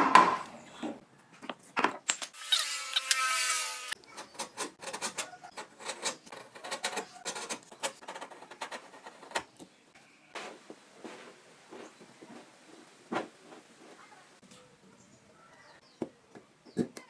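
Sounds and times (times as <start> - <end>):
hand tools scraping and tapping wood: 0.2 - 9.8.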